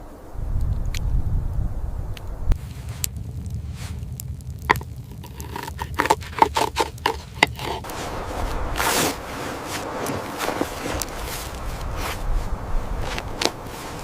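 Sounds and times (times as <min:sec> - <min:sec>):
scraping rustle: 0:02.6 - 0:14.0
sharp clicks and knocks: 0:04.2 - 0:07.9.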